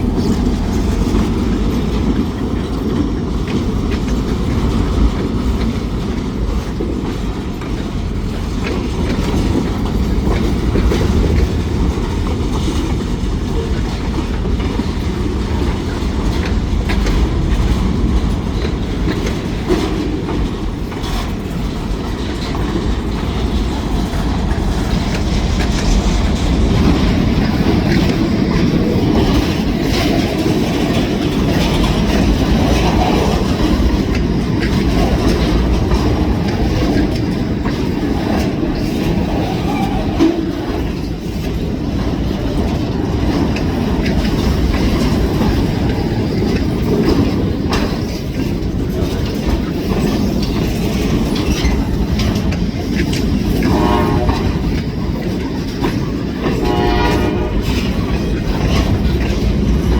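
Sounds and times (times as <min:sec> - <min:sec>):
freight train rumbling: 0:00.0 - 0:59.9
wheels clacking over rail joints: 0:00.0 - 0:59.9.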